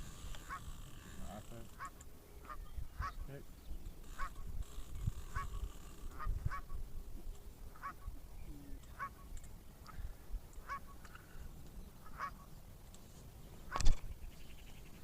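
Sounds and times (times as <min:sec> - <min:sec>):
geese honking: 0:00.4 - 0:03.4, 0:04.1 - 0:04.5, 0:05.2 - 0:06.8, 0:07.7 - 0:08.2, 0:08.9 - 0:10.0, 0:10.6 - 0:11.0, 0:12.0 - 0:12.6.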